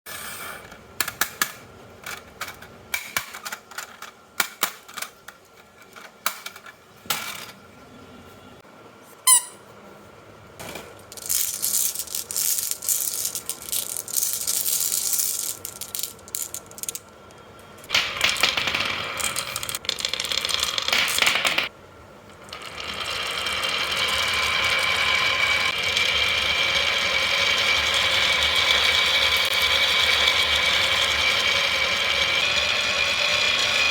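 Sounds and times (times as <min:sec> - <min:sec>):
marbles rolling and clacking: 0:11.0 - 0:21.7, 0:22.3 - 0:33.9.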